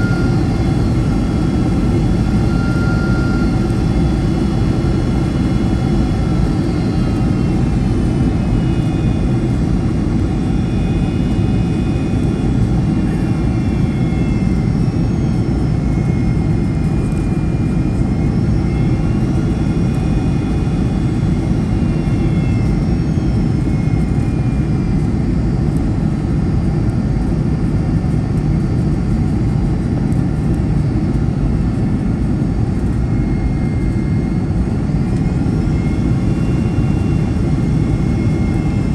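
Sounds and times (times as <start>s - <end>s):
faint whining tones: 0.0s - 38.9s
jet engines and airflow rumbling: 0.0s - 38.9s.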